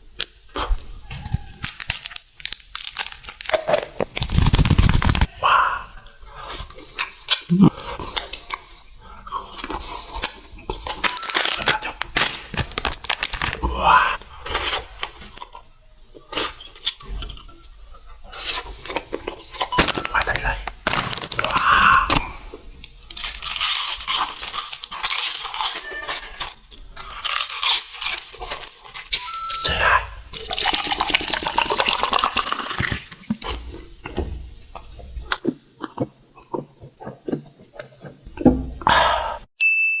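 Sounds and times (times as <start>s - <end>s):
steady high beep: 29.2s - 30.1s, 39.6s - 40.0s
wet slurping: 29.7s - 39.5s
sharp eating clicks: 33.3s - 38.4s.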